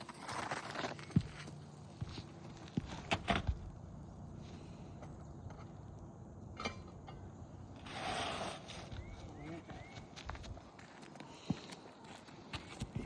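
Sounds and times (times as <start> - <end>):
scraping rustle of shingle: 0.0 - 3.1, 7.8 - 9.2.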